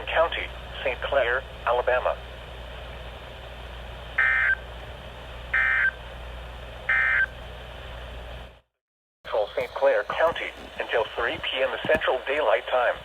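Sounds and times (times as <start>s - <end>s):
radio hiss: 0.0s - 2.2s, 9.3s - 13.0s.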